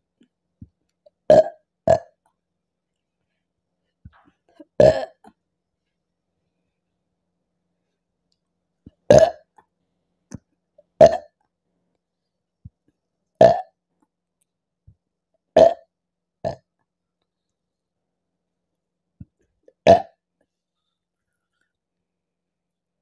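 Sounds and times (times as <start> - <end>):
woman burping: 1.3 - 2.2, 4.6 - 5.4, 9.1 - 9.6, 11.0 - 11.4, 13.4 - 13.7, 19.7 - 20.2.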